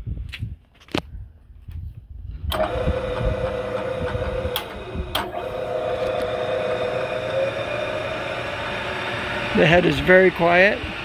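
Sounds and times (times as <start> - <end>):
milling machine whining: 2.5 - 11.0
sharp click: 4.2 - 5.4.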